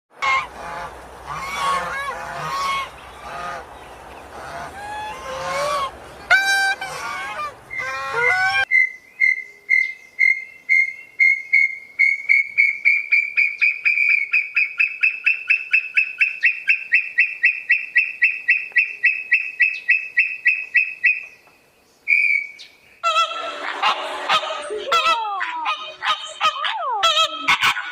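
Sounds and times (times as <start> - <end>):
geese honking: 0.2 - 8.7, 23.0 - 27.9
rapid high-pitched bird calls: 8.6 - 21.4, 22.0 - 23.4.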